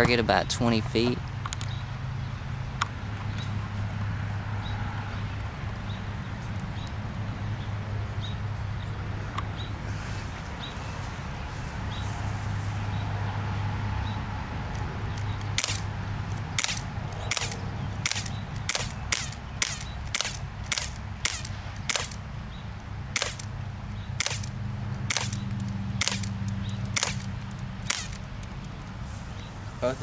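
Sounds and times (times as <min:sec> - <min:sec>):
airsoft pistol firing pops: 0:15.2 - 0:15.9, 0:16.6 - 0:22.2, 0:23.2 - 0:23.5, 0:24.2 - 0:28.3.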